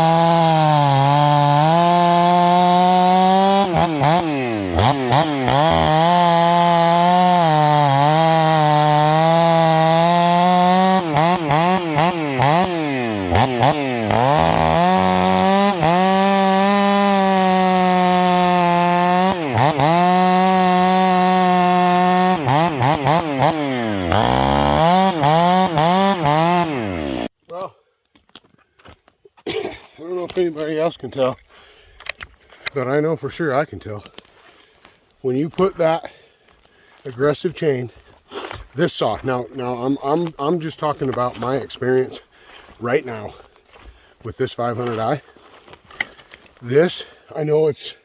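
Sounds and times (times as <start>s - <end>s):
chainsaw cutting wood: 0.0s - 27.4s.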